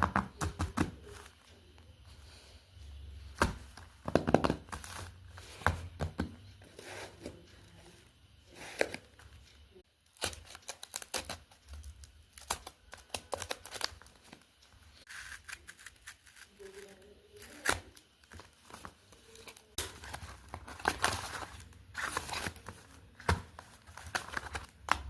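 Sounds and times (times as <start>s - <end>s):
packaging crinkling and tearing: 10.1s - 14.4s.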